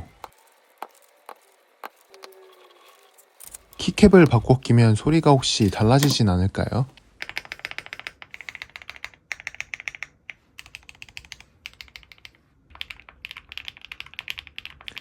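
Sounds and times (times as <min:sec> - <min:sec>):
mechanical keyboard typing: 0:07.2 - 0:15.0.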